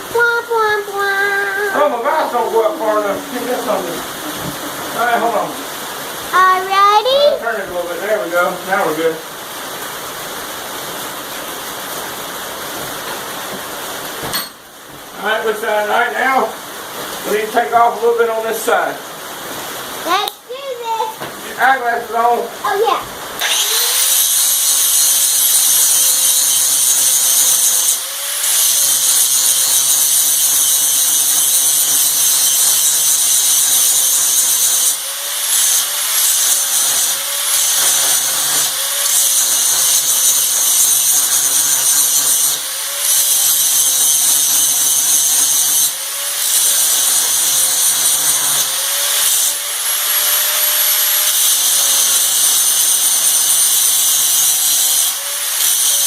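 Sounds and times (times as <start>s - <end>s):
electric grinder grinding metal: 0.0s - 10.2s, 23.4s - 56.0s.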